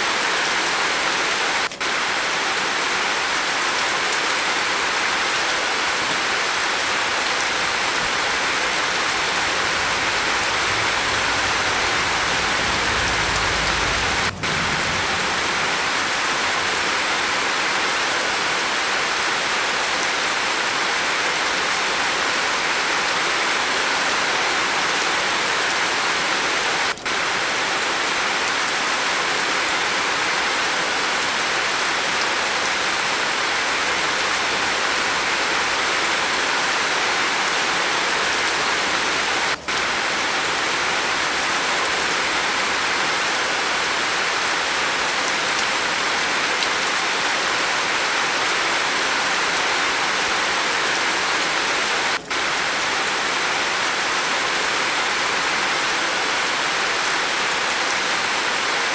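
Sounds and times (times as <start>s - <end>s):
rain falling on a roof: 0.0s - 58.9s
faint low rumble: 9.0s - 16.6s.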